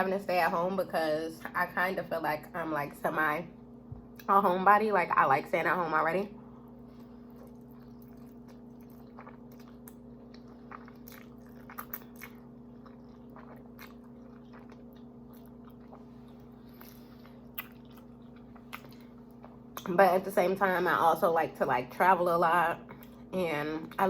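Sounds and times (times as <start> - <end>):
faint steady hum: 0.0 - 24.0
person chewing food: 6.6 - 19.9.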